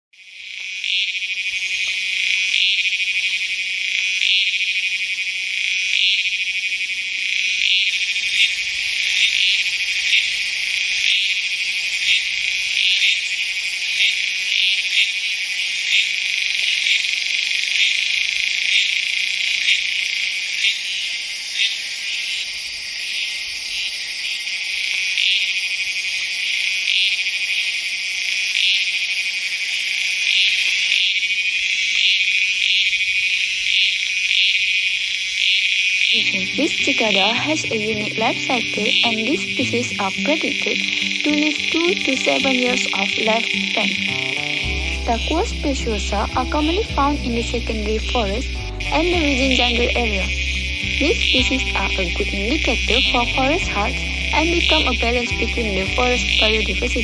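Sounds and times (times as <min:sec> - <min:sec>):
cicadas buzzing: 0:00.2 - 0:57.0
pulsed cicada calls: 0:00.2 - 0:57.0.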